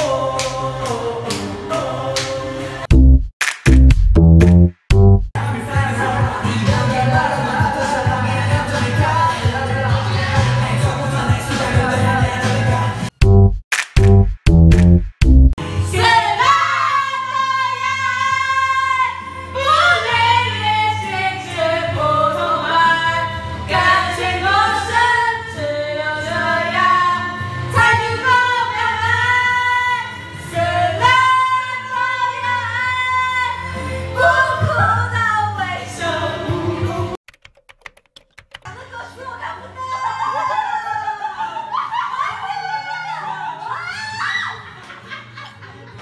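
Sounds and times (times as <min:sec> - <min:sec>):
backing track: 0:02.9 - 0:05.3, 0:13.1 - 0:15.6
woman singing: 0:15.9 - 0:37.2.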